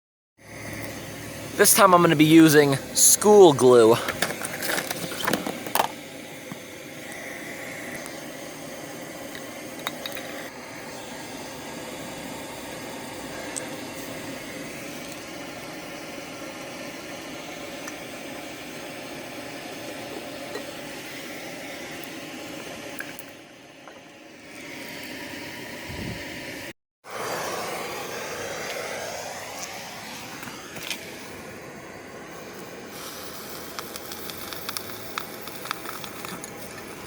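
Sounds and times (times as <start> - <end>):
hot ball sizzling in glue: 32.9 - 37.0
small pops: 33.6 - 36.9.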